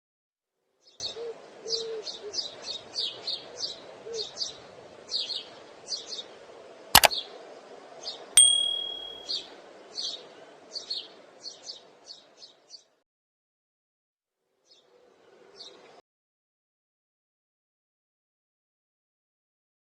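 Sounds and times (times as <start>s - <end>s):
metallic ding: 8.4s - 9.4s
sharp click: 8.4s - 9.4s.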